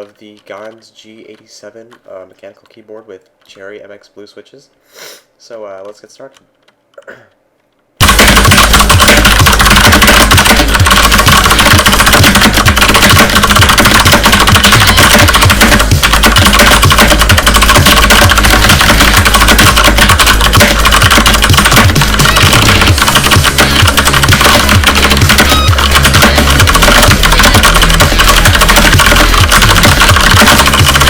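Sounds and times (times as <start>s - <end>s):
fast clicky mechanical keyboard typing: 0.0s - 4.0s, 8.0s - 31.0s.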